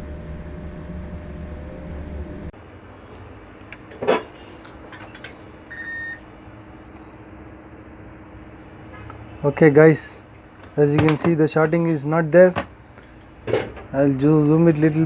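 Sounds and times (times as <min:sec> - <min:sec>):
multimeter beep: 0:03.1 - 0:06.9, 0:08.4 - 0:13.7.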